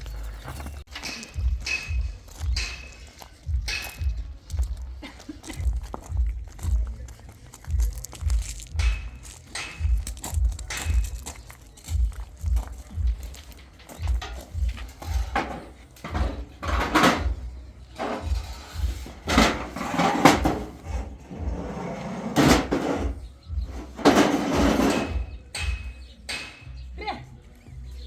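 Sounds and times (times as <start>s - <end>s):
objects knocking and clattering: 8.1s - 26.7s.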